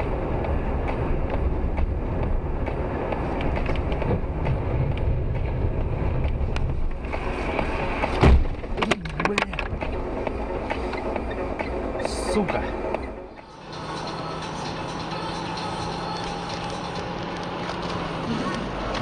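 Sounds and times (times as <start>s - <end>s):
car road and engine rumble: 0.0s - 19.0s.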